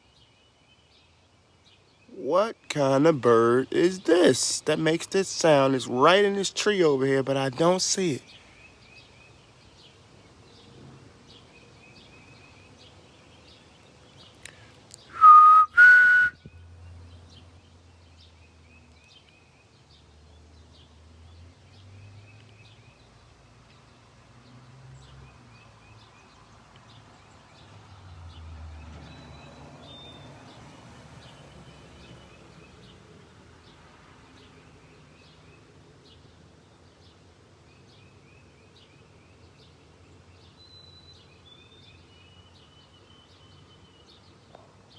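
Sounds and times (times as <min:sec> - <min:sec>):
loud whistled notes: 0:15.1 - 0:16.4.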